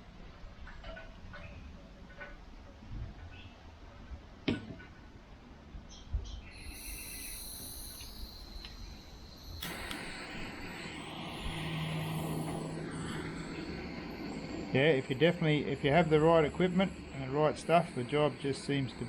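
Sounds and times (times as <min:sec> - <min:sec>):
heat gun blowing: 0:06.6 - 0:18.3.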